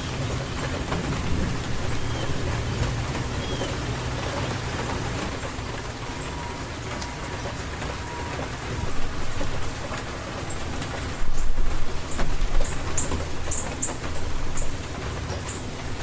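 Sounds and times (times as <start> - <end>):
distant thunder rumble: 0.0 - 16.0
steady rain falling: 0.0 - 16.0.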